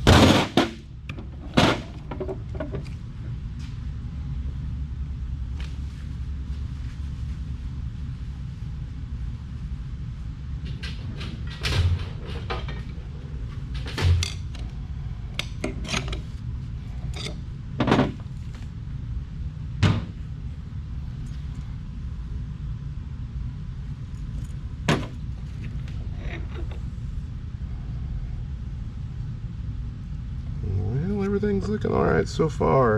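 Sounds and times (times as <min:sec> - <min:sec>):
steady low hum: 0:00.0 - 0:32.9
metal parts clinking and knocking: 0:15.5 - 0:16.3.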